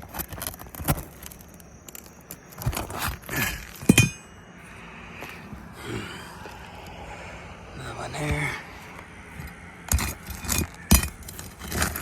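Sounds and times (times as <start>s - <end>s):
metal tool scraping nails: 9.4s - 12.0s.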